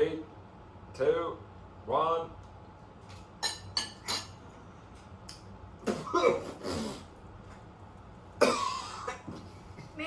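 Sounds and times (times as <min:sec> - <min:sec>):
person clearing throat: 0:05.8 - 0:07.0, 0:08.4 - 0:09.3
person coughing: 0:05.8 - 0:07.0, 0:08.4 - 0:09.3.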